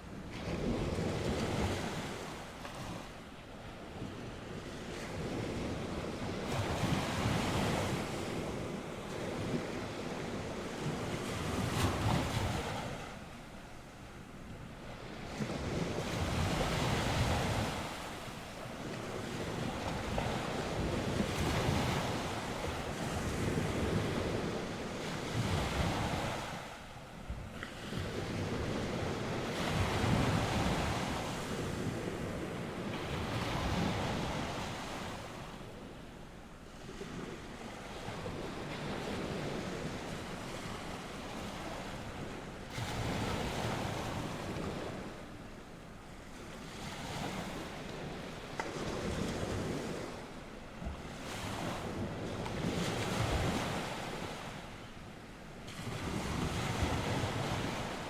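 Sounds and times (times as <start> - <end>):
waves breaking on shore: 0.0 - 58.0
wind rumbling on microphone: 14.4 - 36.0.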